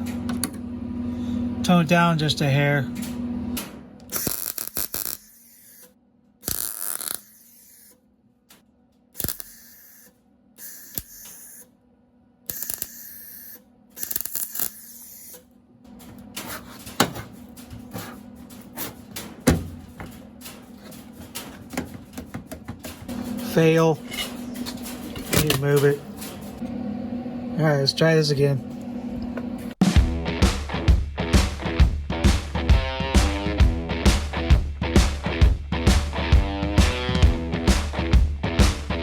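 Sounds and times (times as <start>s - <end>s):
mig welder crackling: 3.0s - 11.8s, 12.5s - 26.7s.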